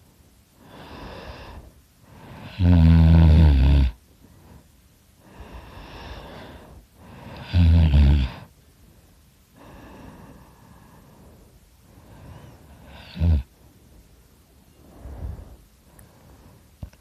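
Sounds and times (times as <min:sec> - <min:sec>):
man breathing: 0:00.6 - 0:02.5, 0:04.1 - 0:07.5, 0:08.3 - 0:16.8
man snoring: 0:02.2 - 0:04.0, 0:05.6 - 0:08.5, 0:12.8 - 0:13.5.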